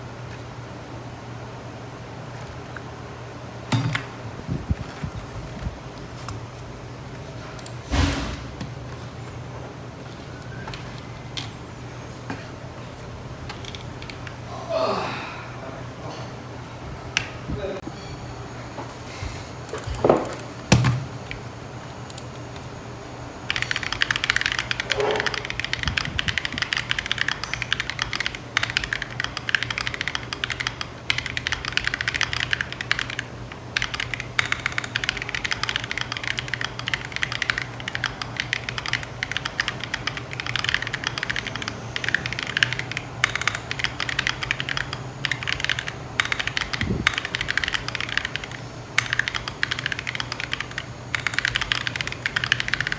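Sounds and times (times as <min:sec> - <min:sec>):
mechanical keyboard typing: 0:13.5 - 0:14.4, 0:19.6 - 0:21.4, 0:23.5 - 0:52.9.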